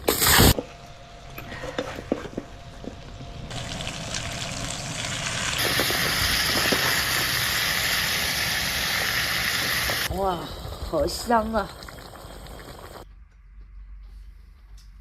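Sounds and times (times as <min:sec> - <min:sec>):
watery hiss: 0:05.6 - 0:13.0.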